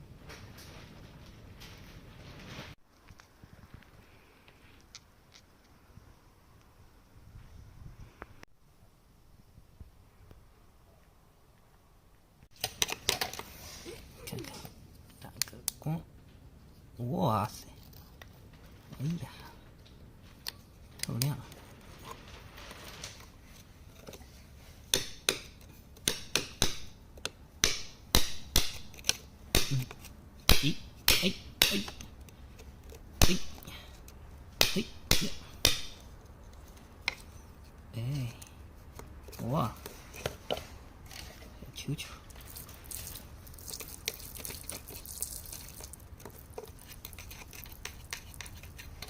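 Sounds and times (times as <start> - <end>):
hand tool tapping rock: 24.9 - 32.1, 34.6 - 36.0
small stones clicking: 42.3 - 49.0.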